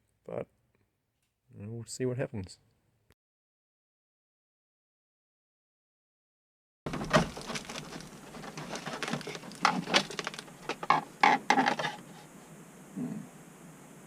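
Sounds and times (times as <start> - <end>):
sharp knocks and clicks: 6.9 - 12.0.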